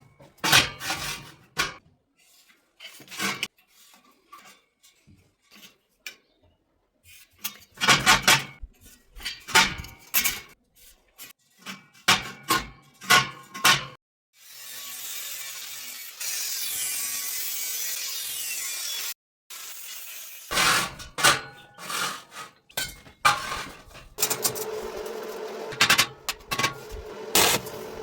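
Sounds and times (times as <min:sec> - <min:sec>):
metal objects clanking together: 0:20.5 - 0:28.0.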